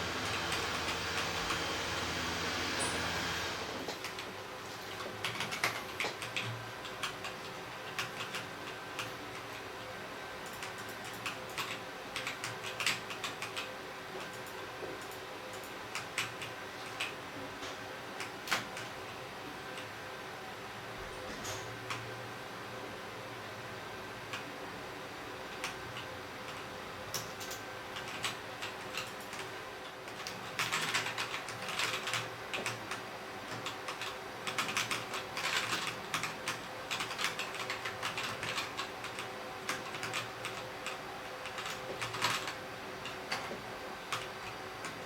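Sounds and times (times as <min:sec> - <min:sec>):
typing on mechanical keyboard: 0:05.0 - 0:09.5, 0:10.4 - 0:17.1, 0:26.5 - 0:29.5, 0:30.1 - 0:43.5, 0:44.1 - 0:45.0.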